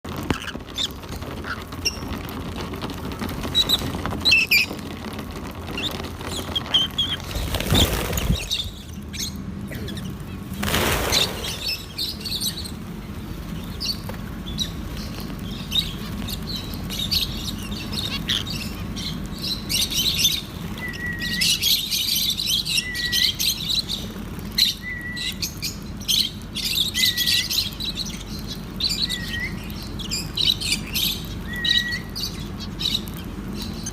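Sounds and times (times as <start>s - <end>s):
rustling noise: 0.0s - 8.9s
lovebirds chirping: 5.7s - 33.9s.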